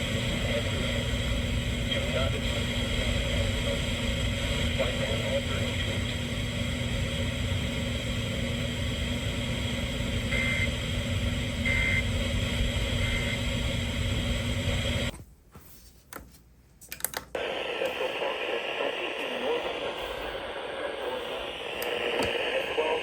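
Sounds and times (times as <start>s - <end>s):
radio static with hum: 0.0s - 15.1s, 17.3s - 23.0s
receiver clicks: 21.7s - 22.6s.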